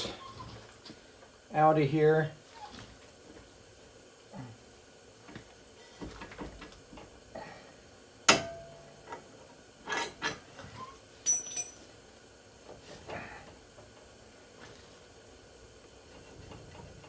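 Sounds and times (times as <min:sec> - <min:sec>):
metal tools clanking: 0:09.9 - 0:11.9.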